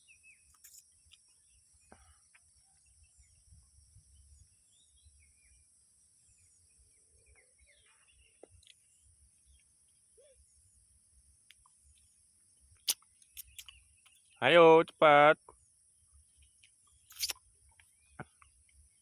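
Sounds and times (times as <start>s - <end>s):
high-pitched insect drone: 0.0s - 1.6s
faint bird chirps: 0.0s - 19.0s.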